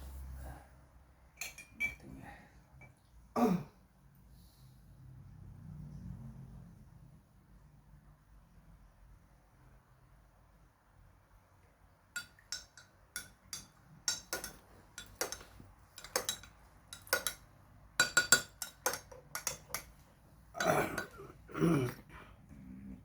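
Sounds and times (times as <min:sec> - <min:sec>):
spoon clinking against glass: 0:01.4 - 0:02.0, 0:12.2 - 0:20.0, 0:20.6 - 0:21.3.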